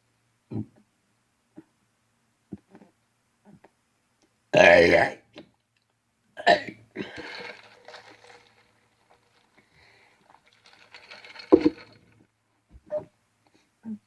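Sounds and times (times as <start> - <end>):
man breathing: 9.6 - 10.3.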